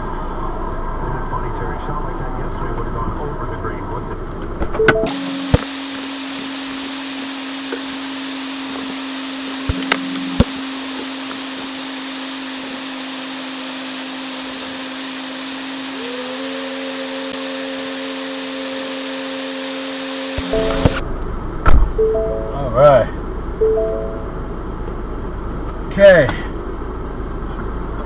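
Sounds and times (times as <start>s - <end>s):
sharp clicks: 5.0s - 8.0s, 8.7s - 11.7s, 20.3s - 21.0s
higher hum: 5.1s - 21.0s.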